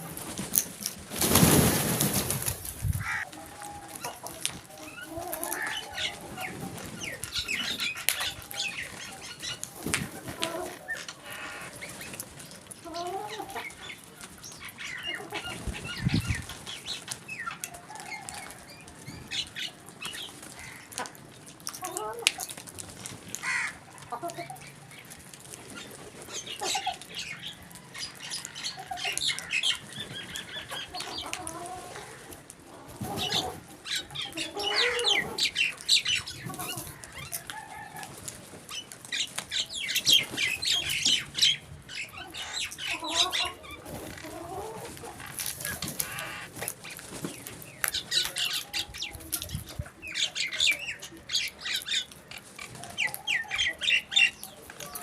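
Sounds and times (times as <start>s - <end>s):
crows cawing: 3.0s - 3.3s, 11.2s - 11.7s, 20.6s - 21.0s, 23.4s - 23.8s, 46.0s - 46.5s.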